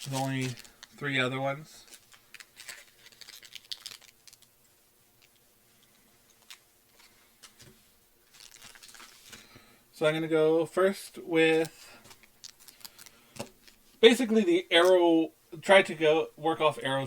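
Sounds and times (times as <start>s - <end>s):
wrappers rustling and clicking: 0.0s - 9.6s, 11.5s - 14.0s.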